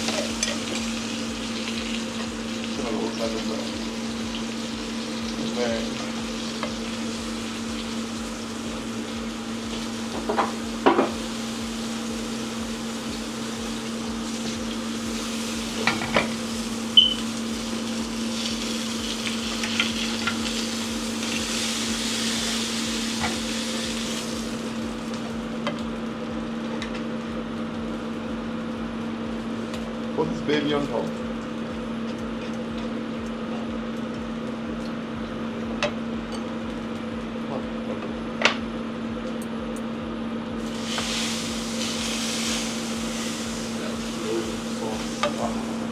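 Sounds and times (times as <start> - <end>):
steak sizzling in a pan: 0.0 - 25.5, 40.6 - 45.9
steady low hum: 0.0 - 45.9.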